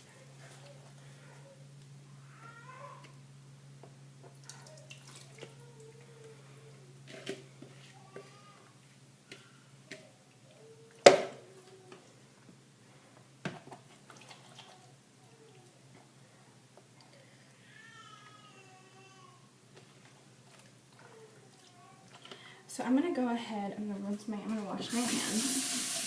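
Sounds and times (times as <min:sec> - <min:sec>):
wet squelches and drips: 0:04.4 - 0:06.1, 0:14.0 - 0:14.9.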